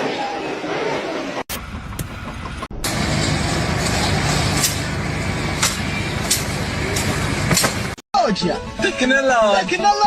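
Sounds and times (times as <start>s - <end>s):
heavy engine rumbling: 1.5s - 8.0s.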